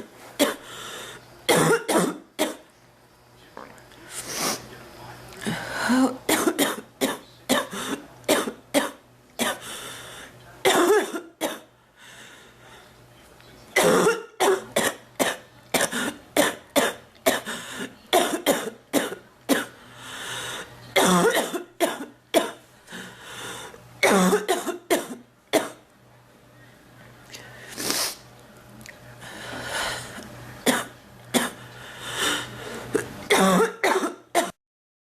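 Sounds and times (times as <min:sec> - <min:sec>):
woman coughing: 0:01.5 - 0:02.6, 0:05.9 - 0:09.6, 0:10.6 - 0:11.7, 0:13.8 - 0:19.7, 0:21.0 - 0:22.6, 0:24.0 - 0:25.8, 0:30.6 - 0:31.6, 0:33.0 - 0:34.5.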